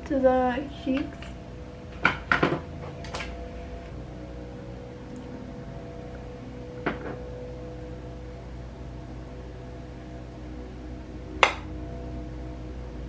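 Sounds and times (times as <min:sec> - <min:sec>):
low background hum: 0:00.0 - 0:13.0.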